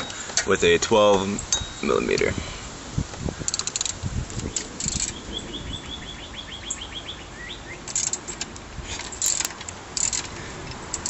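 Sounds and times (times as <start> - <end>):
songbird trilling: 4.4 - 7.9.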